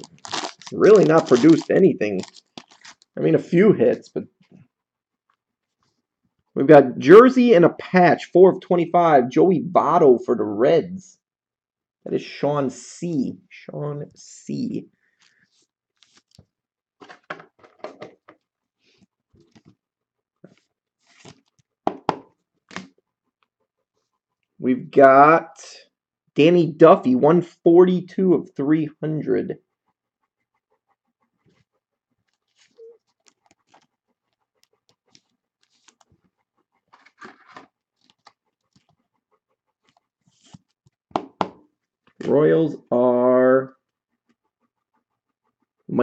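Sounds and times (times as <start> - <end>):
plastic packaging crinkling: 0.0 - 3.2.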